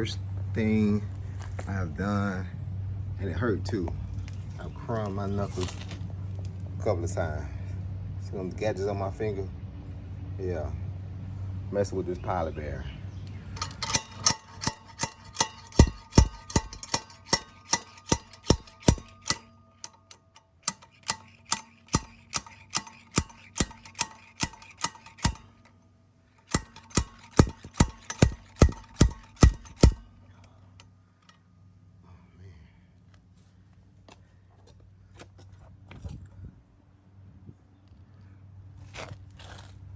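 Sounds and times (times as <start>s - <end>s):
sledgehammer striking steel: 13.6s - 25.7s, 26.4s - 30.8s.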